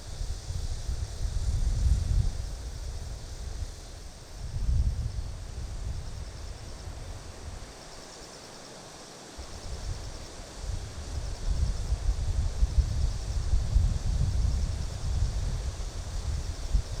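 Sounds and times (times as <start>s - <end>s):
wind buffeting microphone: 10.8s - 17.0s.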